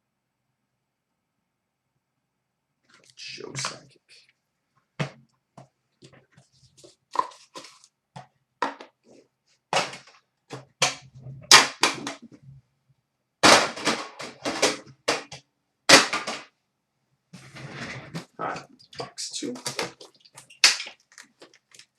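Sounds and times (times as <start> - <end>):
card packaging crinkling: 7.2 - 7.9, 19.0 - 21.9.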